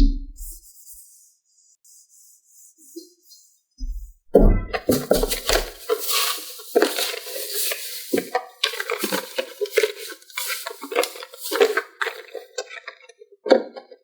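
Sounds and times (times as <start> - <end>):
plastic toy pieces clattering: 4.8 - 12.8.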